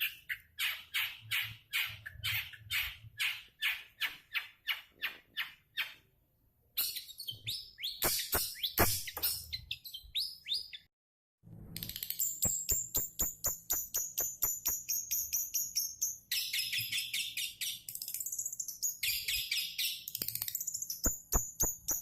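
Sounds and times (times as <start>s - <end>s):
bird chattering song: 0.0s - 6.1s, 6.8s - 10.9s, 11.8s - 22.0s
bird harsh repeated calls: 0.0s - 6.1s, 6.8s - 10.9s.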